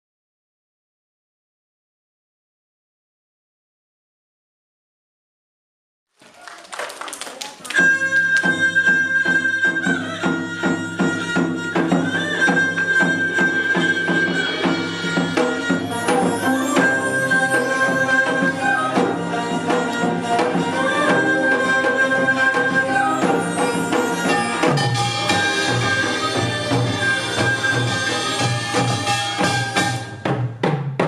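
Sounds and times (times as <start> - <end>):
sliding melody of long notes: 8.1 - 30.2
drum beat: 23.1 - 31.0.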